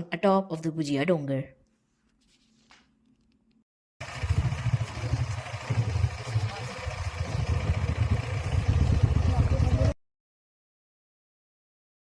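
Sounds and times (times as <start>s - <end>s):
motorcycle engine running: 4.0s - 10.0s.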